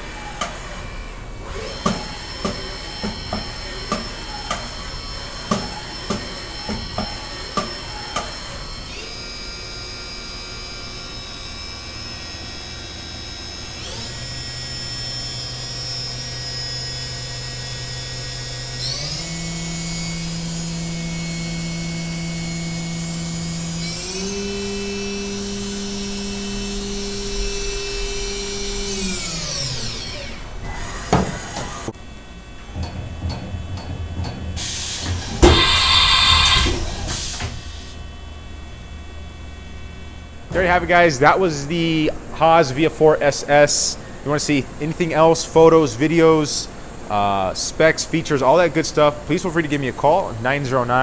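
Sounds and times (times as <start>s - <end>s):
machine spindle whining: 0.0s - 51.0s.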